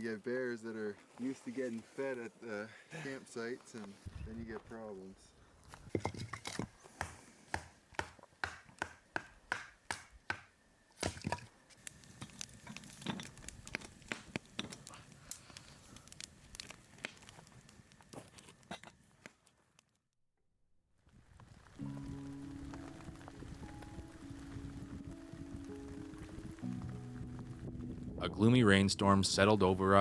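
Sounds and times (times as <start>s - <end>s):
sharp knocks: 7.0s - 11.2s.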